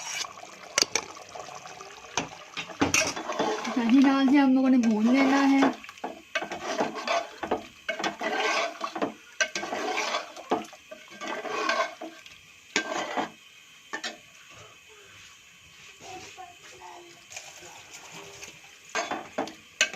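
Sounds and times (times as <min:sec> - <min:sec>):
metal spoon scraping a pan: 0:00.0 - 0:01.0, 0:02.9 - 0:03.8, 0:04.8 - 0:14.2, 0:17.3 - 0:19.9.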